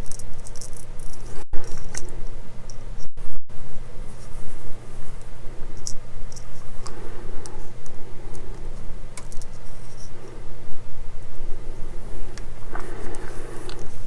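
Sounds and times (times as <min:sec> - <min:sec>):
small plastic parts clicking: 0:00.0 - 0:02.1, 0:09.2 - 0:09.6
steady low hum: 0:00.0 - 0:14.0.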